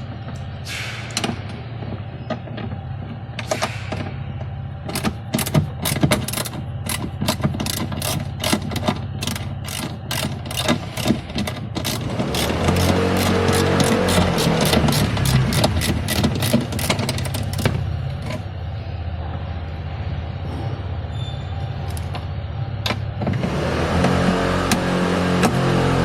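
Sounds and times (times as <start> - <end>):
low hum: 0.0 - 26.0
ratchet clicking: 4.9 - 18.4.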